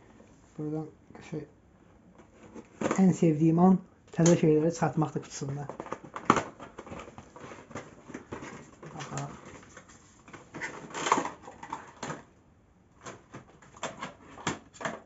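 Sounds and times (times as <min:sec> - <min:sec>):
packaging clicks and rustles: 0:05.4 - 0:12.3, 0:13.0 - 0:15.0.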